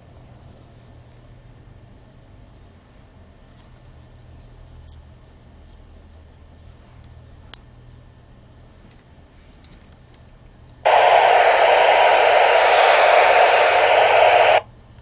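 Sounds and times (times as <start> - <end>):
radio static hiss: 10.9 - 14.6.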